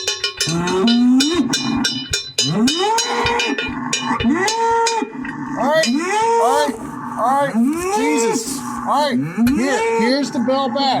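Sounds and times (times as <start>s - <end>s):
cowbell clanking: 0.0s - 6.2s
cattle mooing: 0.4s - 11.0s.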